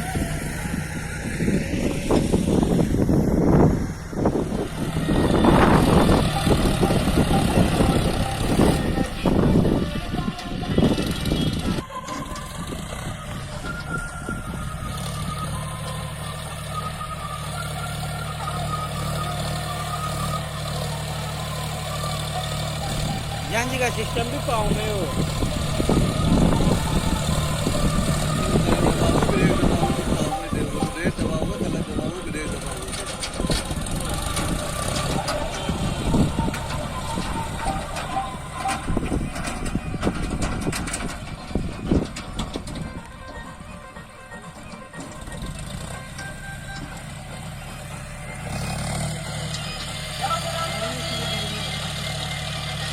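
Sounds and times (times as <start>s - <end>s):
tractor diesel engine running: 0.0s - 52.9s
knocks and rattles: 32.8s - 46.2s.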